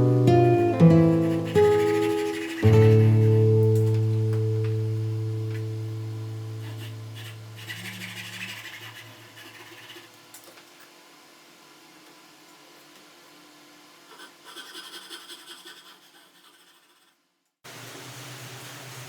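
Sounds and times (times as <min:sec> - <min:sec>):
acoustic guitar chord ringing out: 0:00.0 - 0:07.2
faint light scratching: 0:01.1 - 0:03.5, 0:06.6 - 0:10.2.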